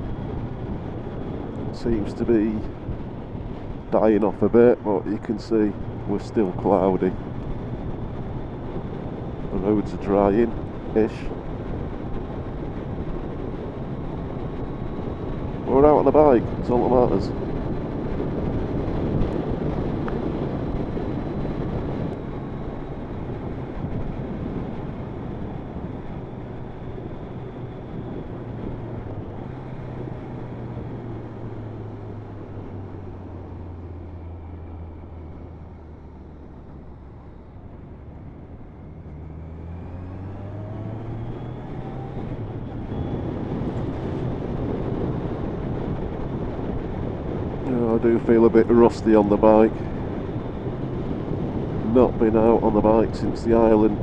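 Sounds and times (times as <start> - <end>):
wind on microphone: 0.0 - 54.0
motorcycle engine: 17.3 - 47.6.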